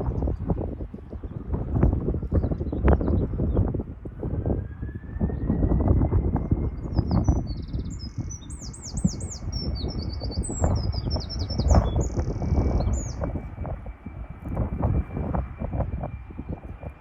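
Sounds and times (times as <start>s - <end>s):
songbird trilling and whistling: 6.7s - 13.5s.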